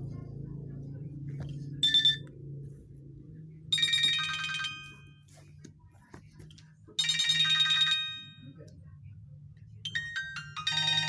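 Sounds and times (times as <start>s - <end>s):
faint low hum: 0.0s - 11.0s
mobile phone ringtone: 1.8s - 2.3s, 3.7s - 5.3s, 7.0s - 8.6s, 9.9s - 11.0s.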